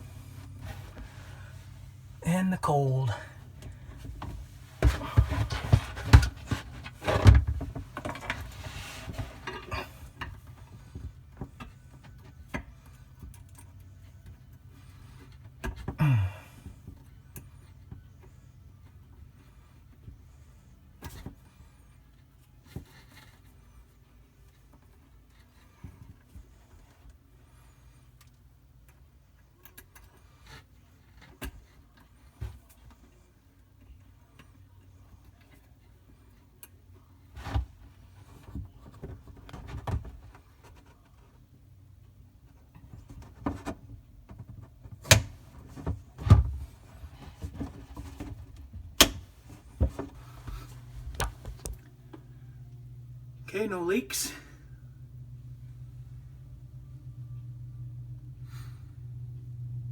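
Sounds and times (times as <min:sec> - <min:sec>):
clicks and rattles of pipe fittings: 0:03.6 - 0:10.4.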